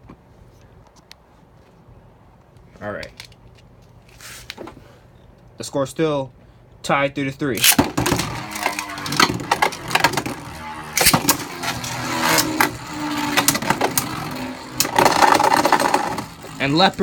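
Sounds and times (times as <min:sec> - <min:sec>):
spinning tops clacking: 0:07.6 - 0:17.0
spinning tops whirring hum: 0:07.6 - 0:17.0.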